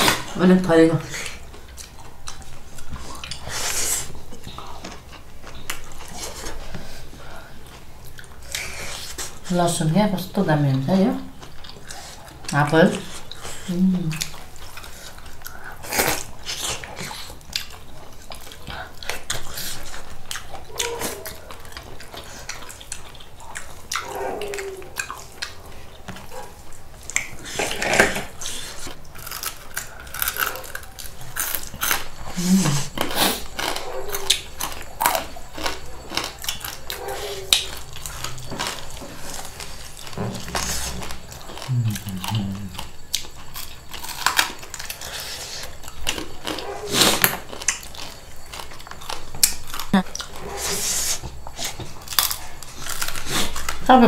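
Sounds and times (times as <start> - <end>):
crunching and chewing: 0.0 - 54.0
low murmurs: 41.6 - 43.0.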